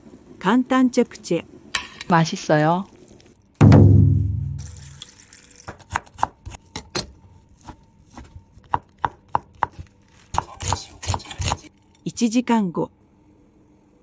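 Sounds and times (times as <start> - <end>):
low ringing hit: 3.6 - 4.8
knife chopping on cutting board: 5.7 - 11.7.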